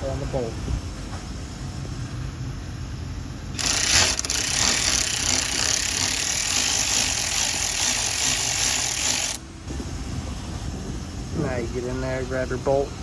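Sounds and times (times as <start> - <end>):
powered ratchet buzzing rattle: 3.5 - 9.4.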